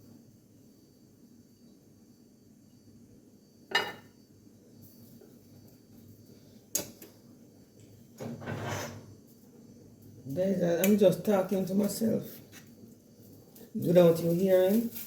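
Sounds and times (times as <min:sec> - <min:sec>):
dishes and cutlery clinking: 0:03.7 - 0:04.1.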